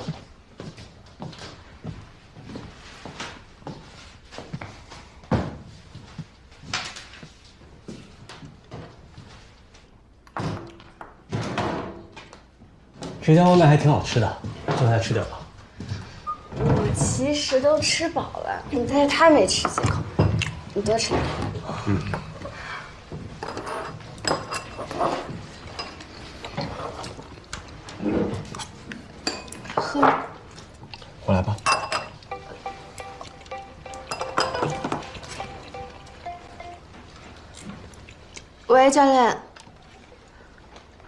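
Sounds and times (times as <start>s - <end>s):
dishes and utensils clinking: 23.4s - 27.1s, 28.6s - 30.3s, 31.6s - 36.9s.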